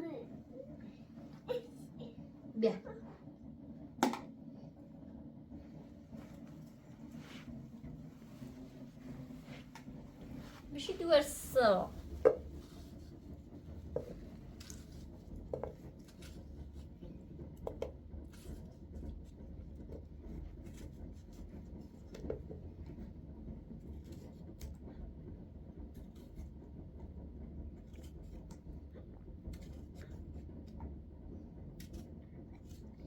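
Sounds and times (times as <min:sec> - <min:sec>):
steady low rumble: 0:00.1 - 0:18.4.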